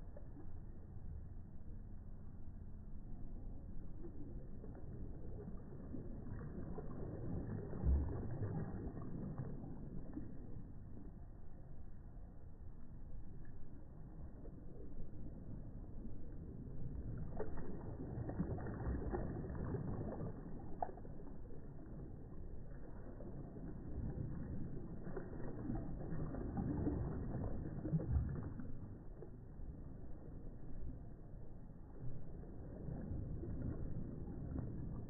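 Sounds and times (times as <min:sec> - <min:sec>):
small waves washing in: 0:03.6 - 0:11.3, 0:13.4 - 0:35.0
water clicks: 0:12.8 - 0:30.0.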